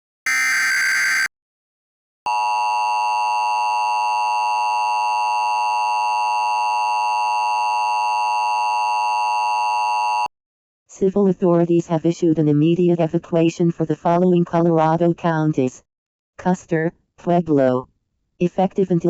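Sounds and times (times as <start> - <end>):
two-tone alarm: 0.3 - 1.3, 2.3 - 10.3.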